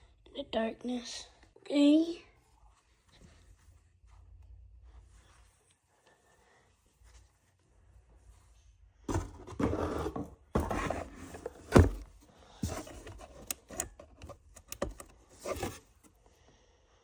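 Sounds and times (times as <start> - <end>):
objects rubbing and scraping: 9.1 - 16.1.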